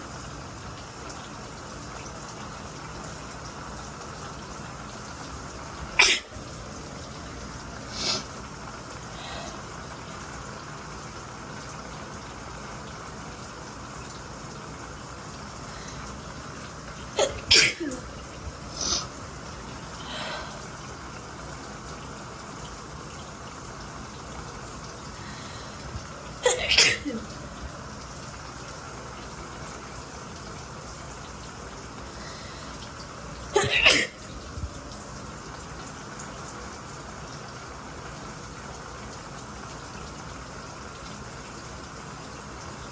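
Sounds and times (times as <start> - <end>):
shower water running: 0.0 - 42.9
woman sneezing: 6.0 - 6.3, 17.2 - 18.0, 26.4 - 27.2, 33.6 - 34.2.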